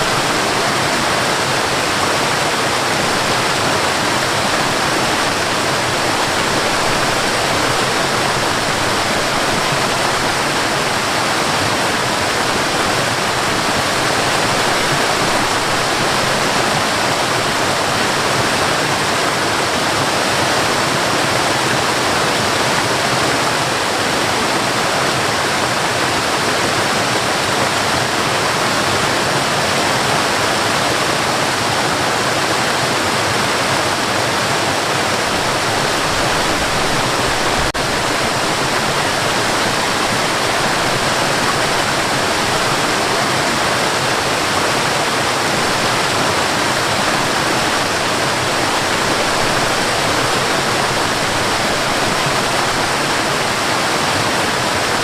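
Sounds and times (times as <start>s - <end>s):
waterfall roaring: 0.0s - 55.0s.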